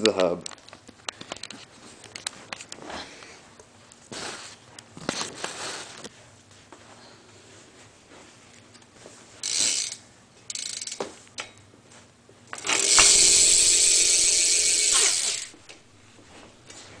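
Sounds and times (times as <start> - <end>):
bicycle freewheel hub buzzing: 9.4 - 11.2, 12.5 - 16.7.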